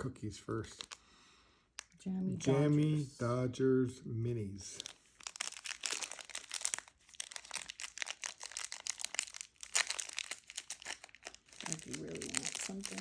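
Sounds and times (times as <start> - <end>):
plastic snack packet crinkling: 0.4 - 1.1, 4.7 - 13.0.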